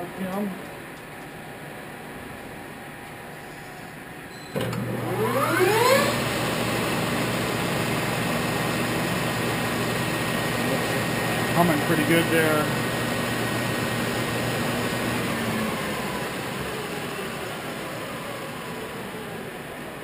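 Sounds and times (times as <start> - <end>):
lathe spinning up and humming: 4.5 - 20.0.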